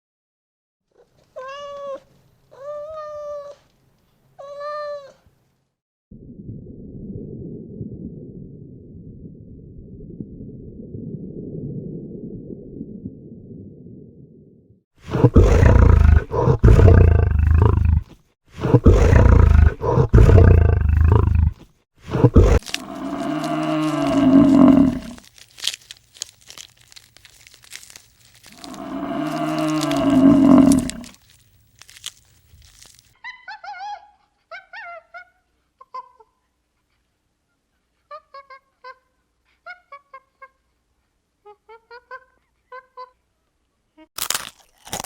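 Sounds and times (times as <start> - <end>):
animal grunt: 15.0 - 25.2, 28.5 - 31.2
animal roaring and calling: 15.1 - 25.3, 28.4 - 31.2.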